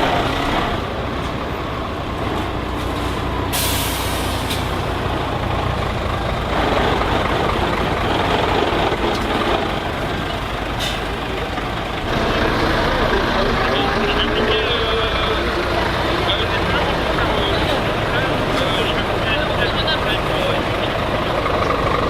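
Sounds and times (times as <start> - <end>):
truck engine running: 0.0 - 22.0
air brake hiss: 3.5 - 4.8.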